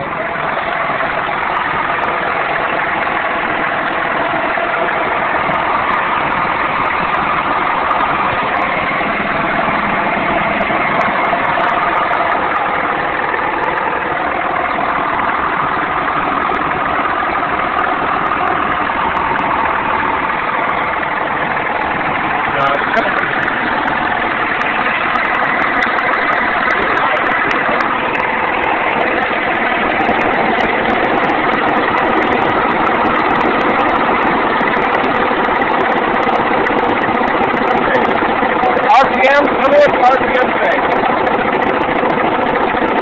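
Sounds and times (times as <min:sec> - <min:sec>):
car engine idling: 0:00.0 - 0:43.0
engine knocking: 0:00.0 - 0:43.0.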